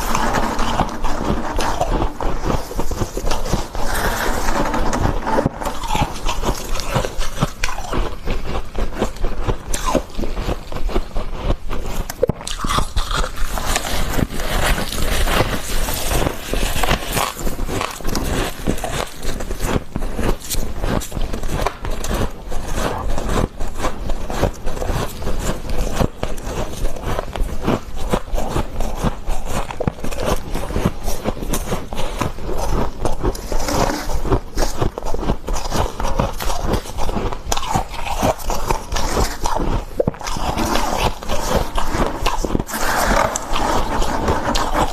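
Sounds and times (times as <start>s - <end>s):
frost crunching as it is eaten: 0.0s - 44.9s.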